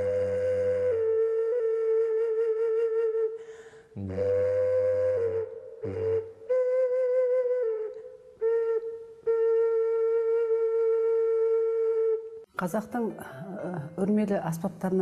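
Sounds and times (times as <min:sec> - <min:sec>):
flute-like wind instrument: 0:00.0 - 0:12.5
player breaths: 0:03.4 - 0:04.0.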